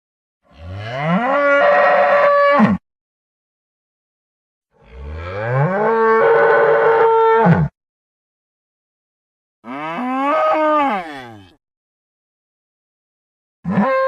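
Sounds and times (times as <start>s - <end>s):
bull bellowing: 9.6s - 11.6s.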